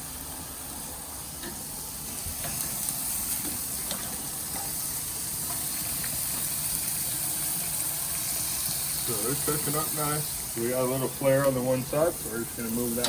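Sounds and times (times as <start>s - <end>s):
steaks sizzling on a grill: 0.0s - 13.0s.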